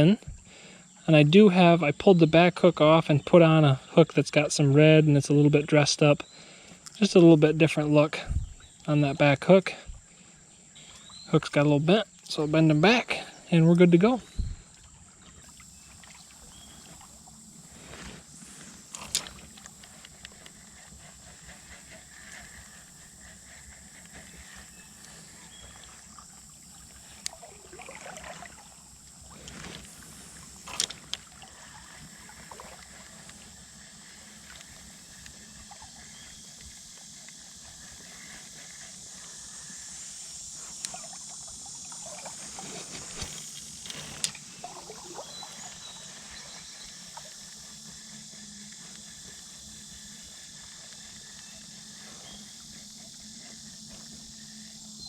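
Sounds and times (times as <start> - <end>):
high steady hiss: 0.0 - 55.0
creek water trickling: 6.2 - 55.0
water swishes: 14.0 - 48.2.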